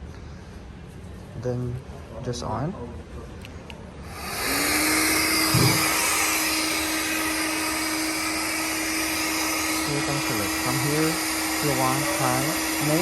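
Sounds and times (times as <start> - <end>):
vacuum cleaner motor whining: 4.0 - 13.0.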